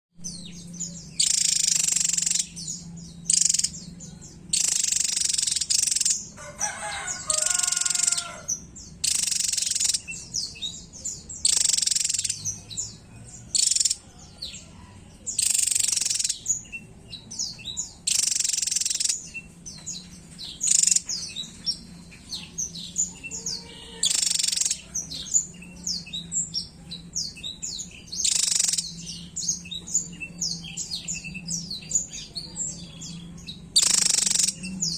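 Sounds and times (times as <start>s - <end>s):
sharp bird chirps: 0.3s - 3.8s, 4.5s - 10.6s, 11.4s - 12.8s, 13.5s - 14.1s, 15.3s - 16.8s, 18.0s - 19.4s, 20.6s - 21.2s, 23.8s - 26.3s, 27.3s - 29.9s, 33.5s - 34.8s
bird song bursts: 0.3s - 14.0s, 15.3s - 19.5s, 33.0s - 34.9s.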